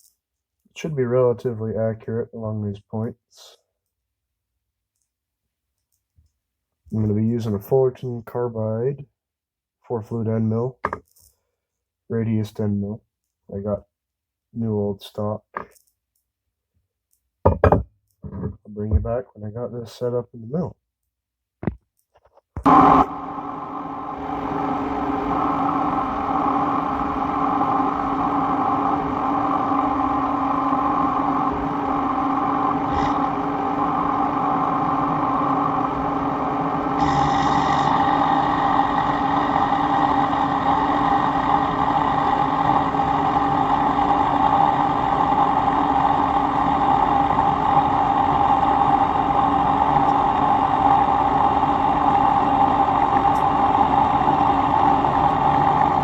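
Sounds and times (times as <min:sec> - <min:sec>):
milling machine whine: 0:22.6 - 0:56.0.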